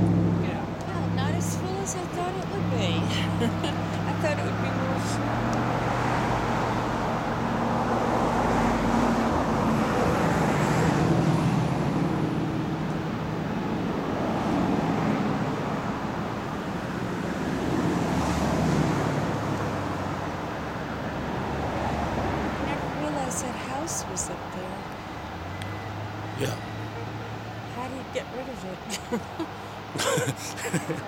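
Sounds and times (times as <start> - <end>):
vehicles passing: 0.0 - 31.0.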